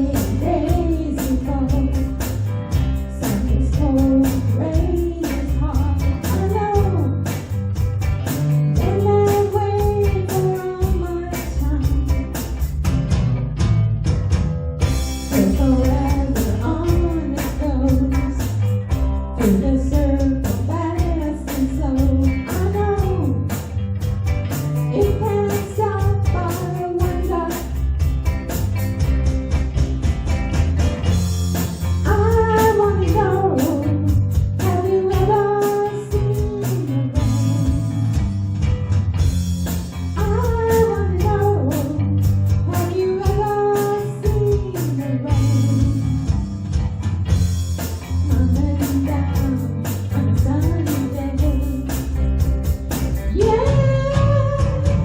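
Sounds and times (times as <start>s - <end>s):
person singing lead vocal: 0.0s - 2.3s, 3.1s - 7.3s, 8.8s - 12.3s, 15.3s - 18.7s, 19.4s - 23.5s, 24.9s - 27.8s, 32.0s - 38.2s, 40.2s - 46.5s, 48.2s - 52.1s, 53.2s - 55.0s
band playing blues-rock song: 0.0s - 55.0s.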